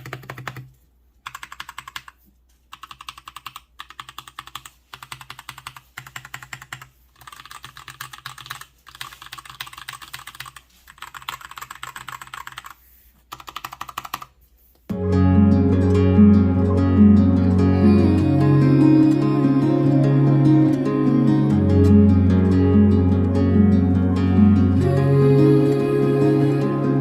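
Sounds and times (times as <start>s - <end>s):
mechanical keyboard typing: 0.0s - 14.4s.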